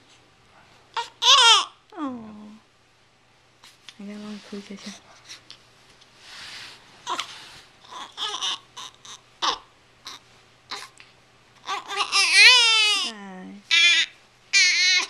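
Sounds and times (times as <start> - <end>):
baby whimpering: 1.0 - 1.7, 7.0 - 11.0, 11.6 - 13.1, 13.7 - 15.0
baby crying high-pitched: 1.0 - 1.8, 7.9 - 10.9, 11.6 - 13.1, 13.7 - 15.0.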